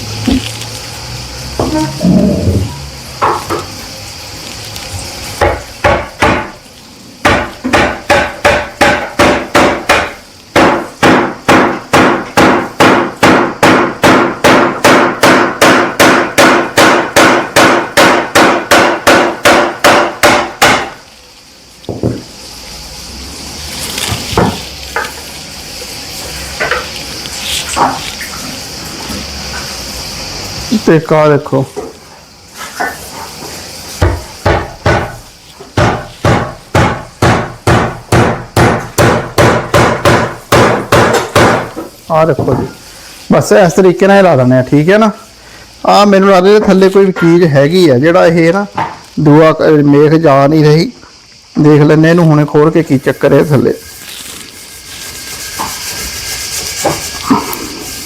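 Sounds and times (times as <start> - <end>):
hammer striking nails: 5.4 - 6.5, 7.2 - 21.0, 35.8 - 41.7.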